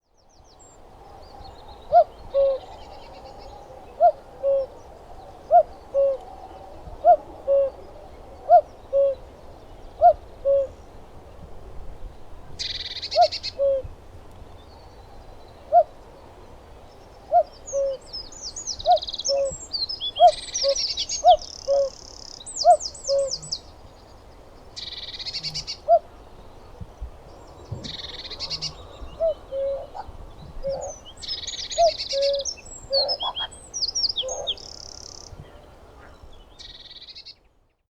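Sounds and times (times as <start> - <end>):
cuckoo calling: 1.9 - 4.8, 5.5 - 9.2, 10.0 - 10.8, 12.6 - 13.9, 17.3 - 23.6, 27.6 - 37.2
small birds chirping: 16.8 - 37.5.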